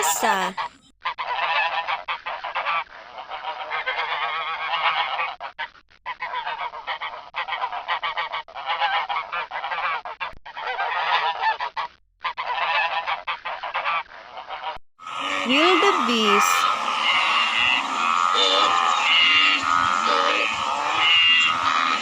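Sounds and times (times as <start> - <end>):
geese honking: 0.0 - 0.7, 14.6 - 22.0.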